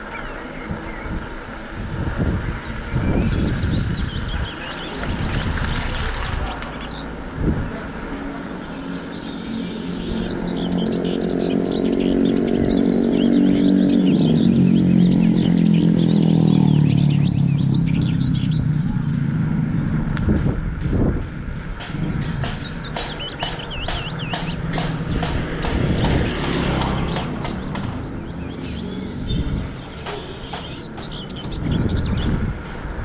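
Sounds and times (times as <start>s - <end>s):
birds chirping: 0.0s - 33.0s
motor vehicle passing: 0.0s - 33.0s
sharp evenly spaced clicks: 21.8s - 29.1s, 29.7s - 31.6s.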